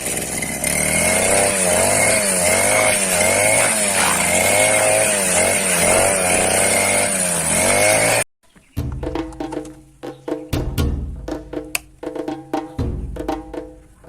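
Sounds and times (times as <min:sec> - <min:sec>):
brush cutter engine running: 0:00.0 - 0:08.2.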